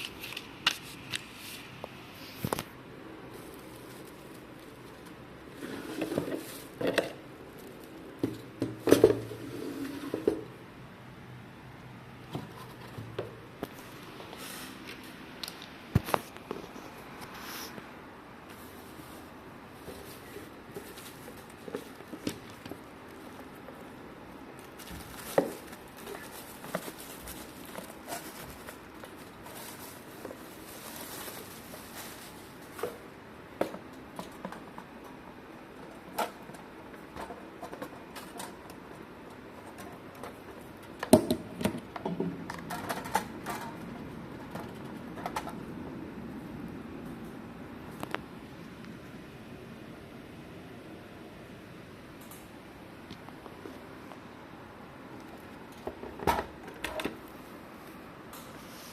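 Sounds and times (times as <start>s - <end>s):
packaging rustling: 3.3s - 8.5s, 18.6s - 24.0s, 24.6s - 33.0s.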